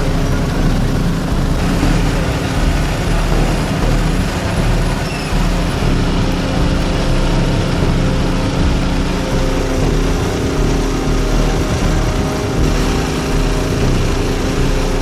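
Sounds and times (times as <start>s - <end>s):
engine humming: 0.0s - 15.0s
loud low rumbling: 0.0s - 15.0s.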